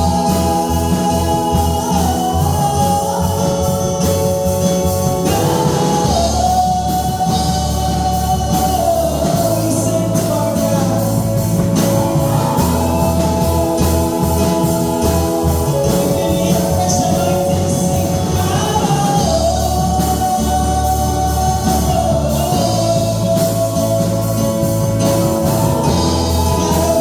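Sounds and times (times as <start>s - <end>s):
instrumental accompaniment: 0.0s - 27.0s
voices singing gospel song: 0.0s - 27.0s.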